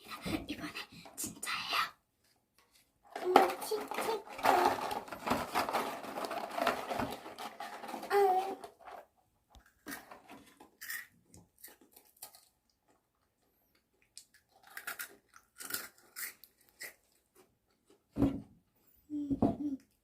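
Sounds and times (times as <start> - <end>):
crunchy snack being chewed: 14.0 - 17.1.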